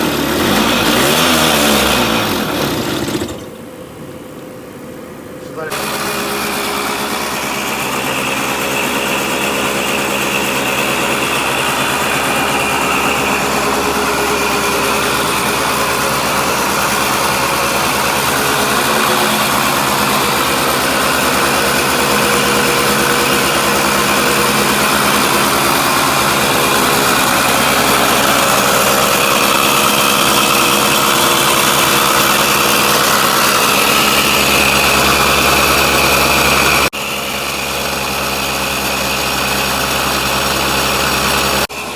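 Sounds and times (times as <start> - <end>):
two-stroke engine running: 0.0 - 3.7, 5.6 - 41.9.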